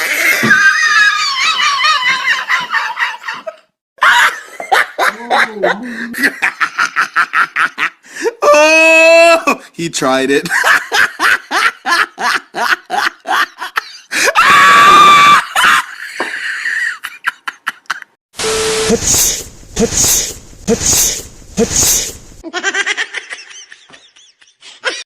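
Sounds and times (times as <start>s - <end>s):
person screaming: 8.4s - 9.6s
person laughing: 22.4s - 25.0s.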